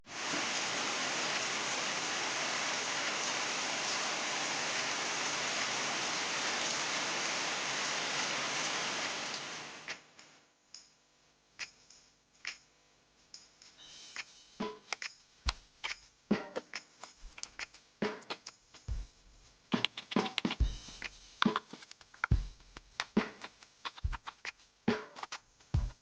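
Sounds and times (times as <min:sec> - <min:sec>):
rain hissing: 0:00.0 - 0:10.0.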